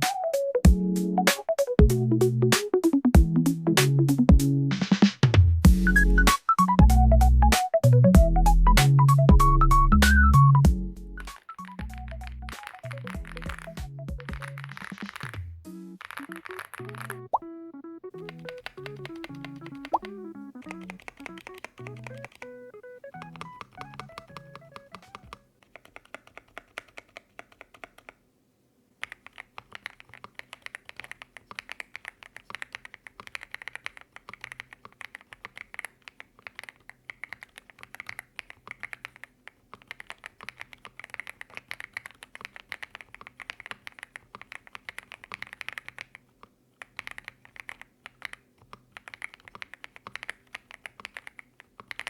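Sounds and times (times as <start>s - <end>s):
background music: 0.0s - 25.4s
mechanical keyboard typing: 11.2s - 15.4s, 16.0s - 17.3s, 18.2s - 28.2s, 29.0s - 52.0s.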